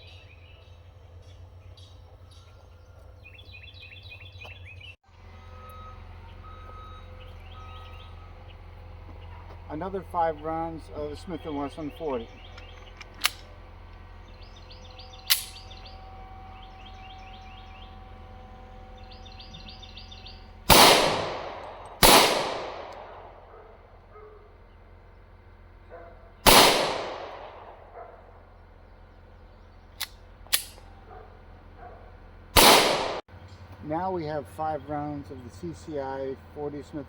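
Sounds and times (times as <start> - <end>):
birds chirping: 0.0 - 37.0
pistol shots with ringing echo: 20.7 - 23.7, 26.4 - 28.2, 32.6 - 33.2.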